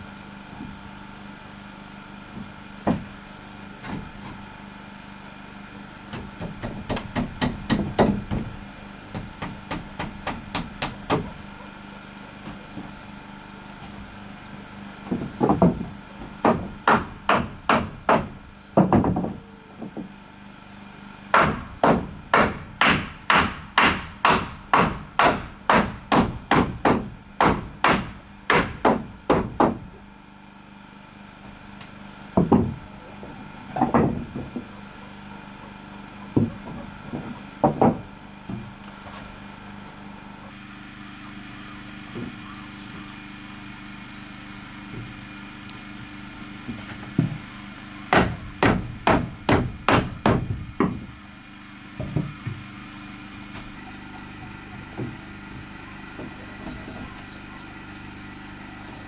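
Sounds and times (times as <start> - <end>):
hammer striking wood: 2.4 - 3.1, 6.1 - 11.4, 15.0 - 20.1, 21.3 - 29.8, 32.4 - 32.8, 33.8 - 34.6, 36.4 - 38.6, 48.1 - 51.1.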